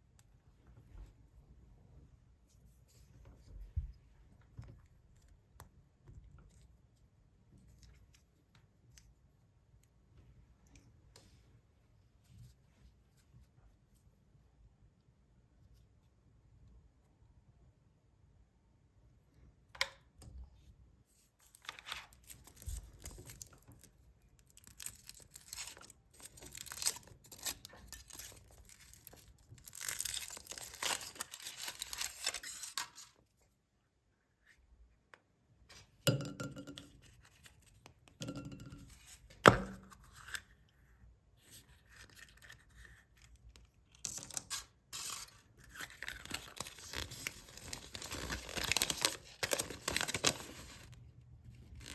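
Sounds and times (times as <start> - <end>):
foil wrappers tearing and crinkling: 24.5 - 33.2, 44.2 - 50.9.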